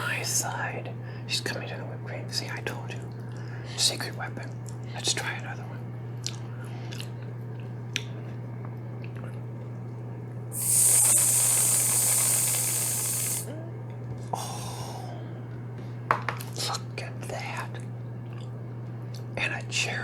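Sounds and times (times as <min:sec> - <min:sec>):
aerosol can spraying hiss: 0:10.6 - 0:13.5.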